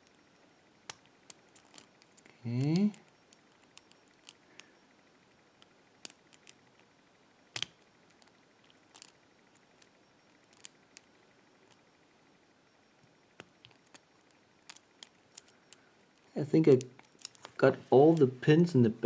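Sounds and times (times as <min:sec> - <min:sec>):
lock pick clicking in padlock: 0:00.9 - 0:04.6, 0:07.6 - 0:10.7, 0:13.4 - 0:15.8, 0:16.7 - 0:17.5.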